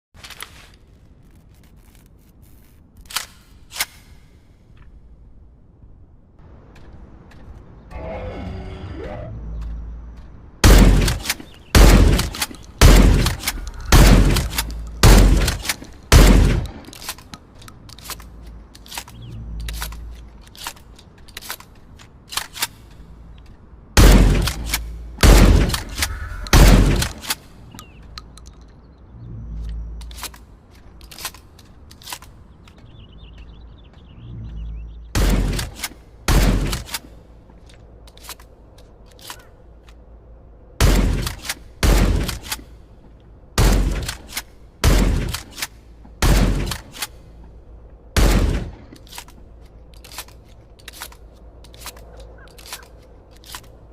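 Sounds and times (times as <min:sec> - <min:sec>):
low rumble after shots: 0:09.2 - 0:17.0
shotgun shots: 0:10.6 - 0:16.8, 0:24.0 - 0:27.4, 0:35.2 - 0:37.1, 0:43.6 - 0:45.6, 0:46.2 - 0:47.0, 0:48.2 - 0:48.9.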